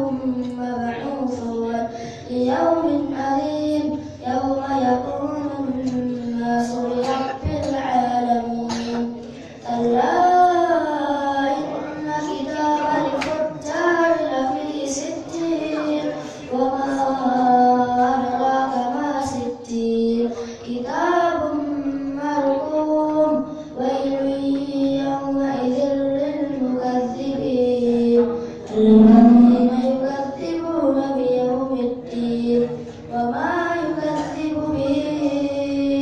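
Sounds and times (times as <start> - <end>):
child reciting in melodic chant: 0.0 - 36.0.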